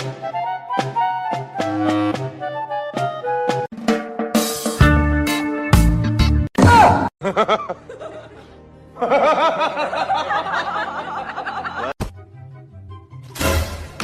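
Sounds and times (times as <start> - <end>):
music: 0.0 - 14.0
snickering laughter: 7.2 - 12.0.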